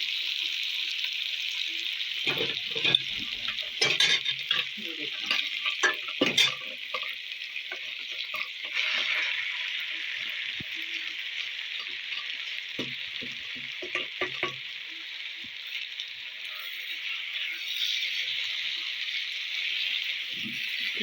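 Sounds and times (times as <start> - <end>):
vegetables sizzling in a frying pan: 0.0 - 21.0
utensil scraping a pan: 2.3 - 7.1.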